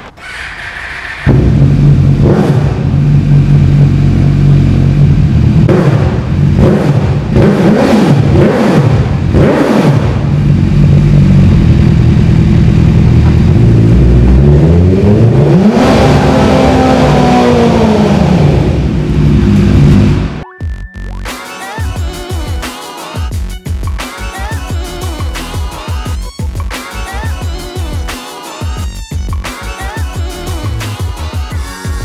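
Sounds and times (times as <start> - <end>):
motorcycle engine revving: 1.2 - 20.4.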